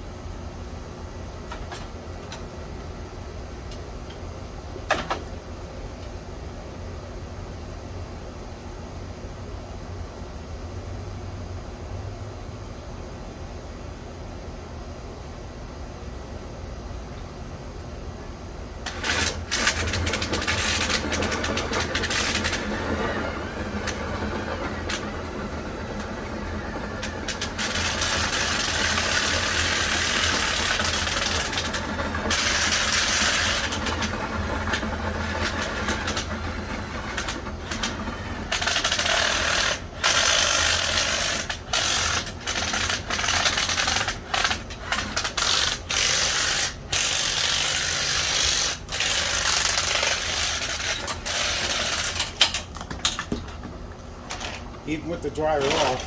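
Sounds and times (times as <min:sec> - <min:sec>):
drill motor whirring: 0:18.9 - 0:52.6, 0:54.3 - 0:56.0.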